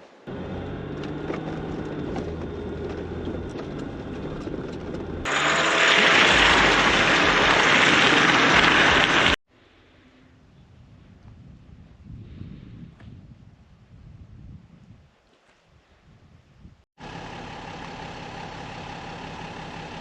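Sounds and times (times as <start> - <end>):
vehicle engine droning: 0.3 - 9.4, 17.0 - 20.0
loud rushing hiss: 5.3 - 9.4.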